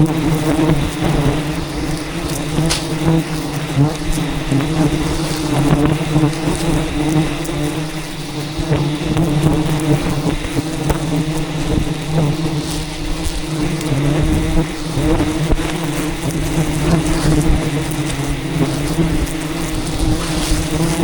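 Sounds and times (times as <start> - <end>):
bees buzzing: 0.0 - 21.0
handling knocks on microphone: 2.7 - 3.0.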